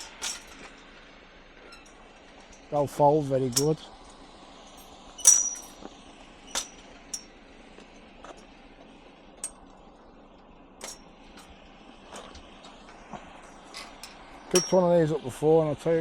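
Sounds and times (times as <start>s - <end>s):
light knocks and clinks: 0.0s - 0.9s, 4.8s - 5.9s, 6.5s - 7.3s, 9.4s - 9.8s, 10.8s - 11.6s, 13.7s - 14.9s
metal bed frame clanking: 0.0s - 1.0s, 1.6s - 3.8s, 4.7s - 5.9s, 6.5s - 7.3s, 10.8s - 11.0s, 13.7s - 15.0s.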